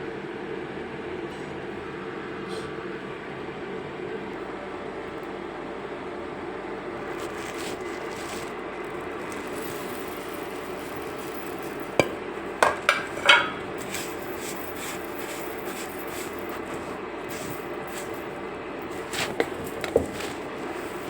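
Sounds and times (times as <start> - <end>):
low background hum: 0.0 - 21.0
kitchen utensils knocking: 9.3 - 17.0, 18.9 - 21.0.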